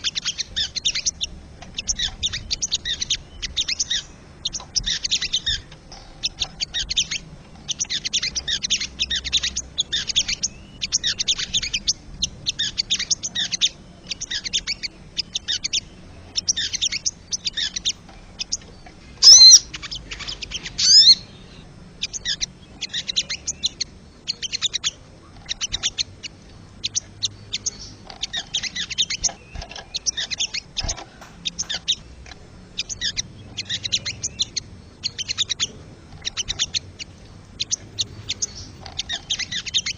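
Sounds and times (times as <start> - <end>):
bird calling sharp high notes: 19.2 - 21.6.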